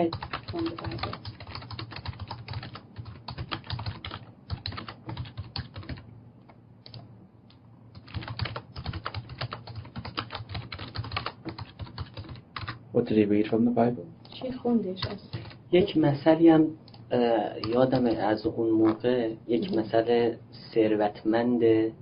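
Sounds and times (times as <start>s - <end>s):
typing on computer keyboard: 0.0s - 7.0s, 7.9s - 12.8s, 15.0s - 15.6s, 17.6s - 18.4s.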